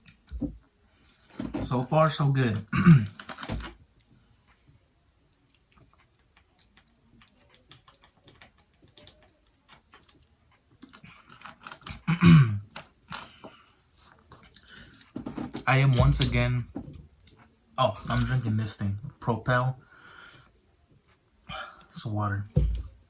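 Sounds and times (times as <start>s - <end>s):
person chewing noodles: 3.1s - 15.2s.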